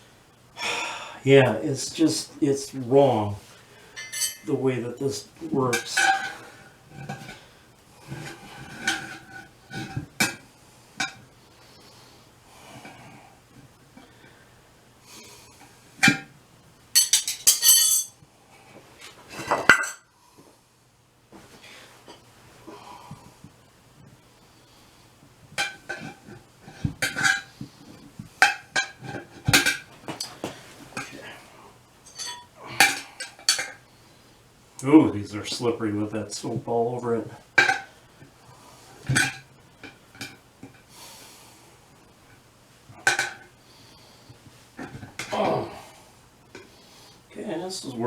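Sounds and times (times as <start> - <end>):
tools clinking on metal rim: 4.0 - 4.6, 17.0 - 18.2, 32.0 - 33.8
tire spoons clanking on wheel rim: 17.0 - 18.2.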